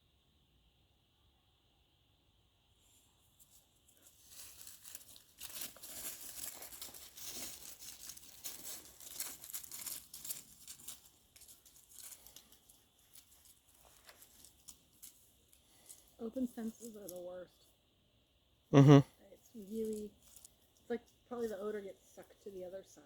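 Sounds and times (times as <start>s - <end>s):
rustling and crackling clicks: 3.4s - 17.2s.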